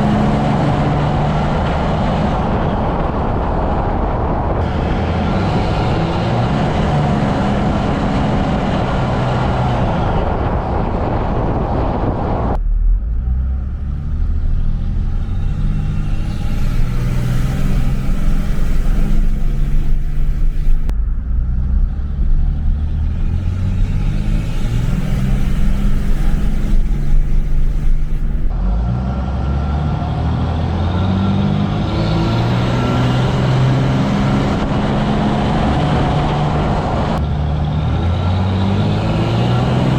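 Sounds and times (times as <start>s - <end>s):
diesel engine revving: 0.0s - 11.7s, 12.5s - 39.9s
turbo whistling: 14.9s - 20.9s, 23.1s - 28.5s.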